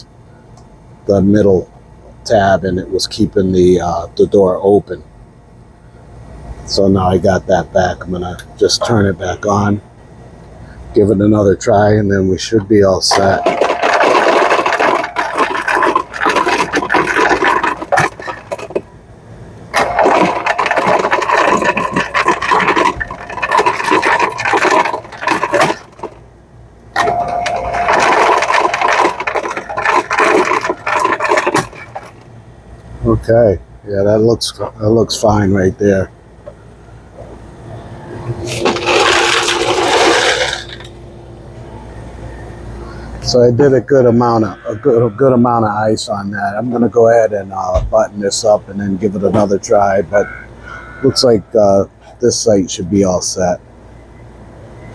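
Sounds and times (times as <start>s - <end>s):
steady hum: 0.0s - 54.9s
ice cubes clattering from chute: 13.1s - 18.8s, 19.8s - 26.2s, 27.0s - 32.2s, 38.4s - 40.9s.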